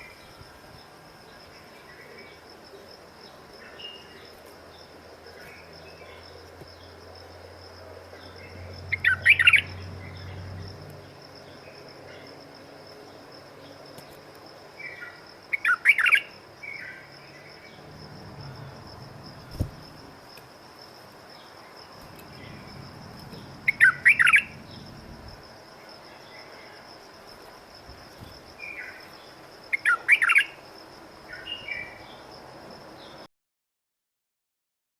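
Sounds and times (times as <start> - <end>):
bird warbling song: 8.2 - 10.7, 14.8 - 17.0, 22.1 - 25.0, 29.7 - 30.5.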